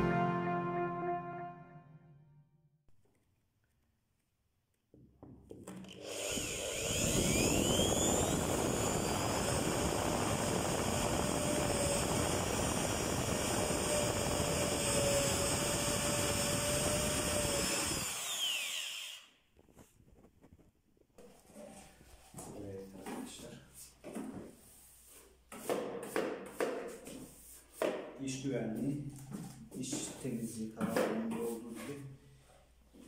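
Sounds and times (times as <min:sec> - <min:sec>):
electric drill boring wood: 0:05.8 - 0:19.3.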